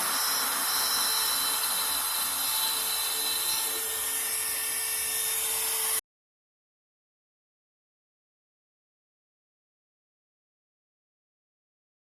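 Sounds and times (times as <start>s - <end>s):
circular saw blade whining: 0.0s - 6.0s.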